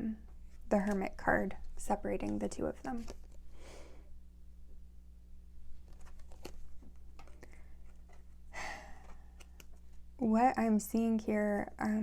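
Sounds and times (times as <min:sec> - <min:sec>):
steady low hum: 0:00.0 - 0:12.0
faint taps and rustles of handling: 0:00.2 - 0:03.5, 0:05.7 - 0:08.4
soft breath: 0:03.5 - 0:04.2.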